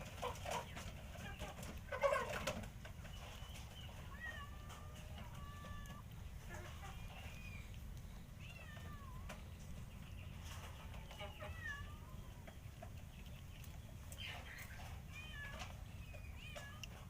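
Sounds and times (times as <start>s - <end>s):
cats meowing: 3.6s - 12.8s, 14.2s - 17.0s.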